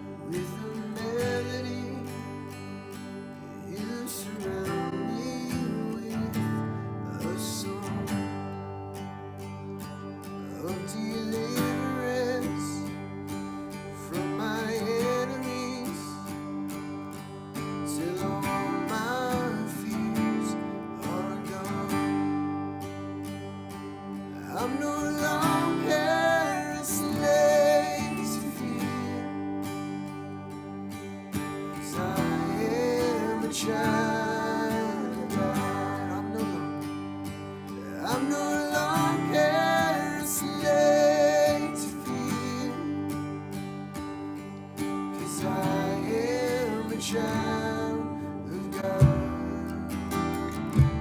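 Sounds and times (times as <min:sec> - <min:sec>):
acoustic guitar strumming: 0:00.0 - 0:51.0
person singing: 0:24.4 - 0:30.0, 0:31.6 - 0:43.3, 0:45.2 - 0:51.0.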